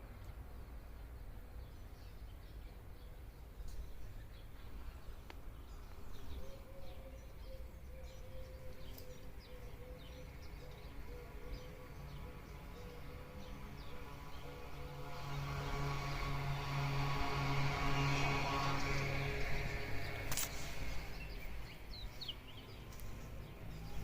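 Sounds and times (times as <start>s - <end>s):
small birds chirping: 0.2s - 16.8s, 18.2s - 24.0s
low rumbling background: 10.8s - 24.0s.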